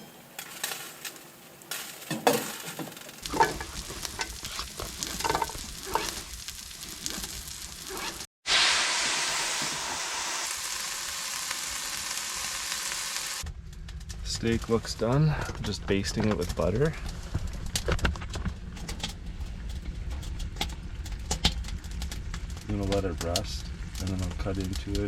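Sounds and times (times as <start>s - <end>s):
steak sizzling in a pan: 0.5s - 13.4s.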